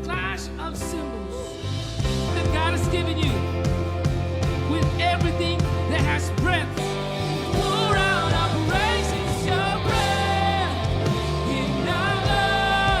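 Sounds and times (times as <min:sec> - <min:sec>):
keyboard chords: 0:00.0 - 0:13.0
steady bass: 0:00.0 - 0:13.0
worship band playing: 0:00.0 - 0:13.0
voices singing: 0:07.0 - 0:13.0.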